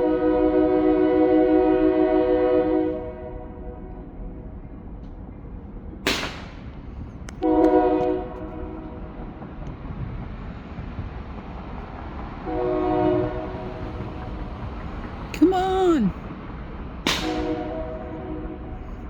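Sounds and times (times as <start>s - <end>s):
horn blasts: 0.0s - 4.0s, 7.4s - 9.1s, 12.4s - 14.2s, 17.1s - 19.0s
firework bang: 6.0s - 6.8s, 17.1s - 17.7s.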